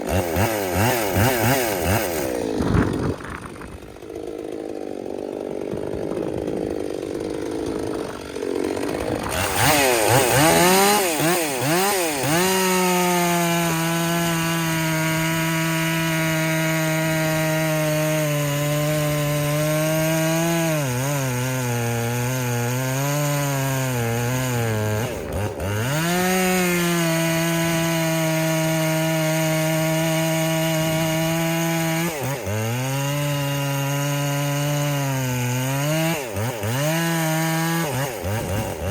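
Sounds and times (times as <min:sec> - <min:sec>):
chainsaw revving and cutting wood: 0:00.0 - 0:38.9.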